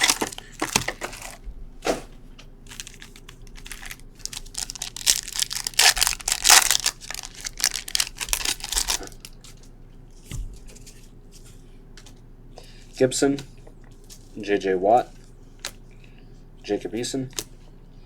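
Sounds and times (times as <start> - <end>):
packaging ripping and crackling: 0.0 - 1.4, 2.6 - 9.4.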